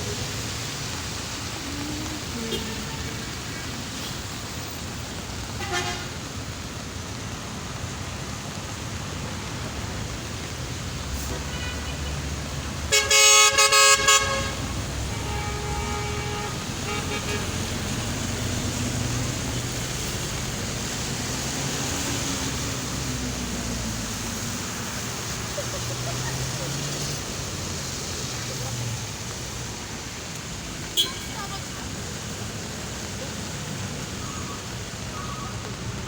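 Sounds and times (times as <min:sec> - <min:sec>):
vehicle horn honking: 0:12.9 - 0:17.5, 0:31.0 - 0:31.3.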